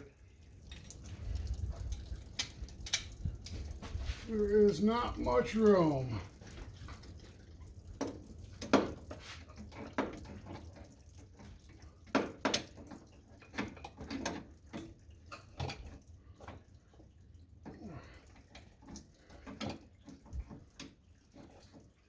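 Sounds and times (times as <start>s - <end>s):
light clicks and knocks of metal parts: 0.0s - 22.0s.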